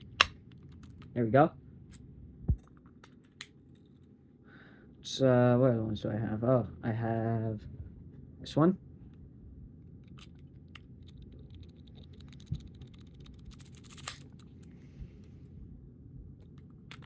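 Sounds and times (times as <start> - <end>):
low steady hum: 0.0 - 17.0
lockpicks clicking and scratching: 10.1 - 14.6, 16.4 - 17.0.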